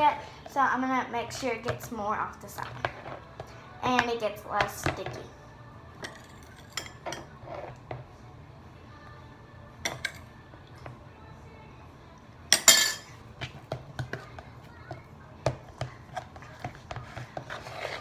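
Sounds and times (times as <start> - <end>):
spoon clinking against bowl: 12.6 - 13.2.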